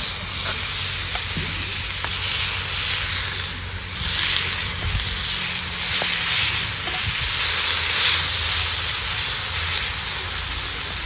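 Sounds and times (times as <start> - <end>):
steak sizzling over fire: 0.0 - 11.0.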